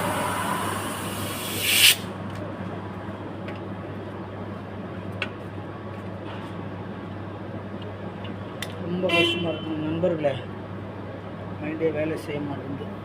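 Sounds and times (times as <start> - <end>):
compressed air hissing: 0.0 - 2.1.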